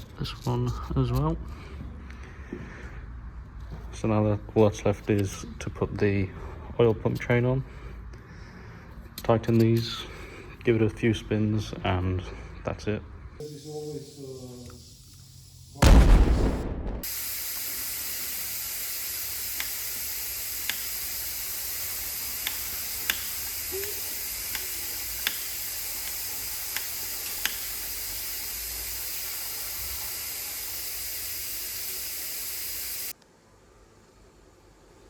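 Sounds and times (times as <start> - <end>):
hiss of air and water spray: 13.4 - 15.8, 17.0 - 33.2.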